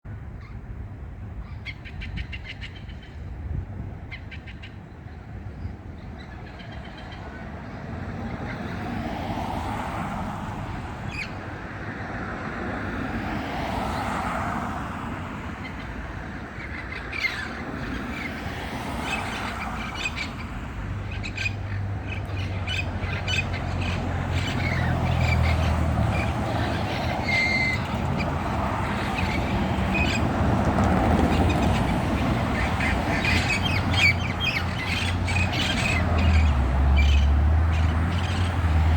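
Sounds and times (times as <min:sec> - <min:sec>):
parrots squawking: 0:21.1 - 0:30.3, 0:32.5 - 0:38.7.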